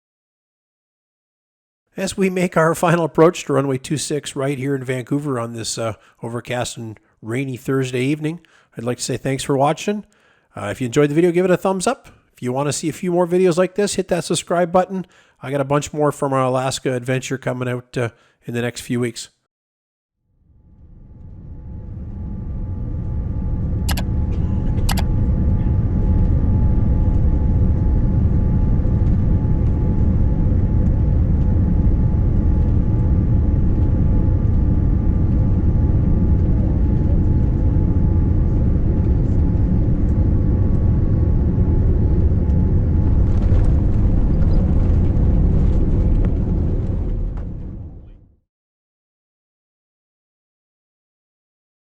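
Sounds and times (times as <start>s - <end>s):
airliner cabin engine rumble: 20.6s - 48.3s
sharp clicks: 24.9s - 25.1s.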